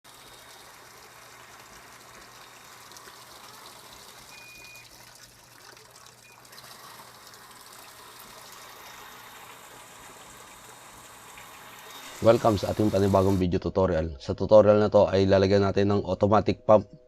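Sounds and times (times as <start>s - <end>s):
water gushing: 0.0s - 13.4s.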